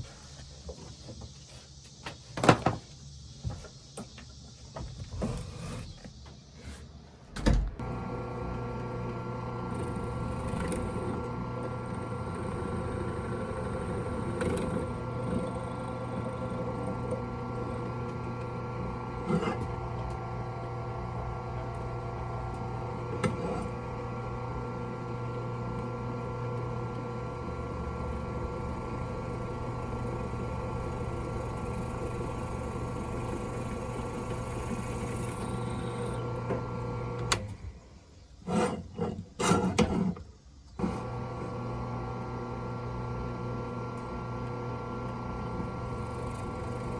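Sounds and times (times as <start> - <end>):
electric motor humming: 7.8 - 37.7, 40.8 - 46.9.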